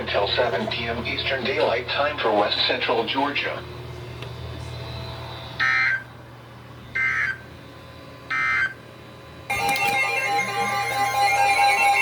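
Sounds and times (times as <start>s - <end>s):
music: 9.5s - 12.0s.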